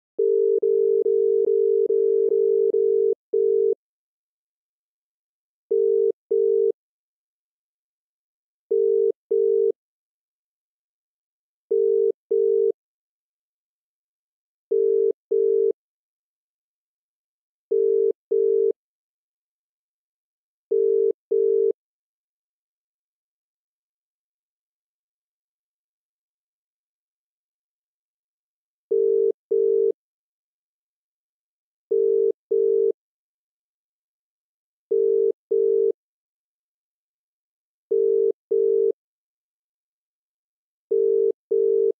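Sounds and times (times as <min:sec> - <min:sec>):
telephone line beeps: 0:00.2 - 0:03.8, 0:05.7 - 0:06.8, 0:08.7 - 0:09.8, 0:11.7 - 0:12.8, 0:14.7 - 0:15.8, 0:17.7 - 0:18.8, 0:20.7 - 0:21.8, 0:28.9 - 0:30.0, 0:31.9 - 0:33.0, 0:34.9 - 0:36.0, 0:37.9 - 0:39.0, 0:40.9 - 0:41.9.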